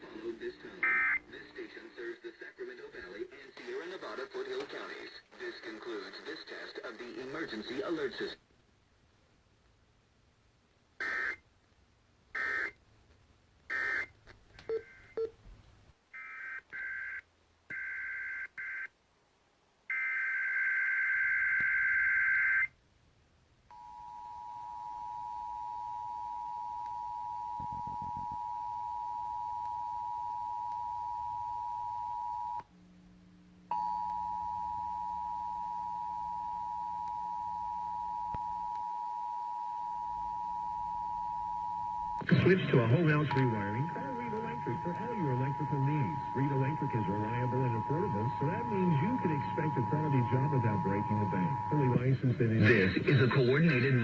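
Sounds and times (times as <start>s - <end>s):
two-tone attention signal: 42.4s - 53.3s.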